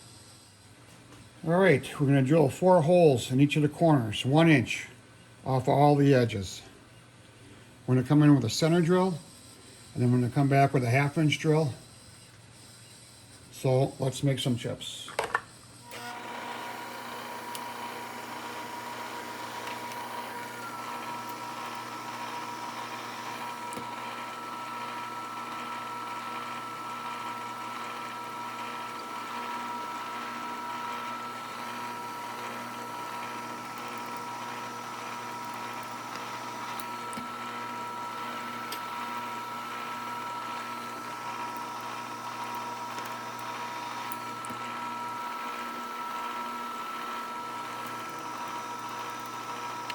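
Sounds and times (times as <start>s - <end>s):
milling machine whine: 15.8s - 49.9s.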